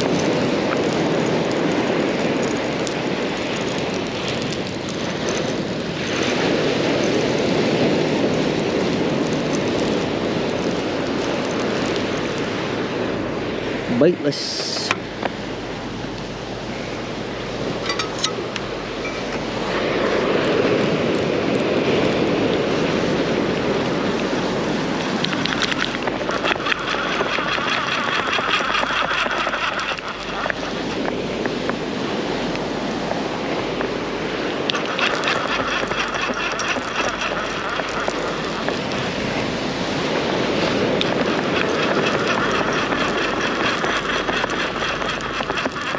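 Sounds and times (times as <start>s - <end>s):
surf rushing: 0.0s - 45.9s
wind: 0.0s - 45.9s
rapid rhythmic whirring: 23.2s - 45.9s.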